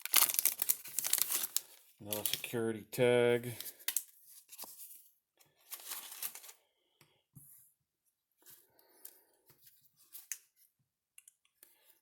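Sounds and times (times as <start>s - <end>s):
packaging tearing and crinkling: 0.0s - 2.4s
packaging rustle: 0.0s - 2.5s, 5.6s - 6.6s.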